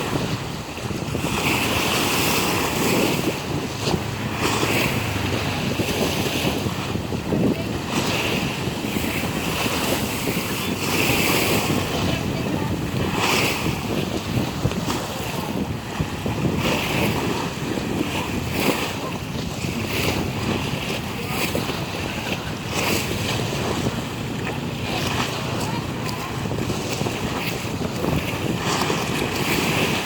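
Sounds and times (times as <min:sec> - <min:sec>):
sea waves breaking: 0:00.0 - 0:30.0
wind buffeting microphone: 0:00.0 - 0:30.0.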